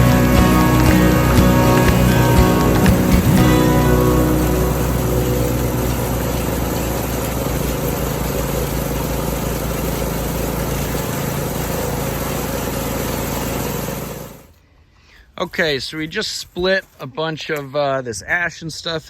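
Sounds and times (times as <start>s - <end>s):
background music: 0.0s - 8.1s
small engines running: 0.0s - 14.6s.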